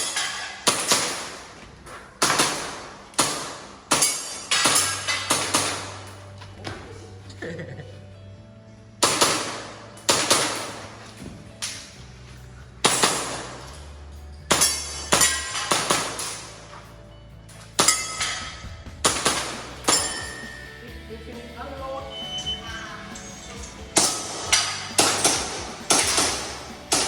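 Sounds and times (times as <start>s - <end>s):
pellets ringing on steel targets: 0.0s - 1.6s, 2.2s - 6.4s, 9.0s - 11.0s, 12.8s - 20.8s, 23.3s - 27.0s
background music: 0.0s - 27.0s
airsoft pistol shots: 2.2s - 6.1s, 14.5s - 16.5s, 24.0s - 27.0s.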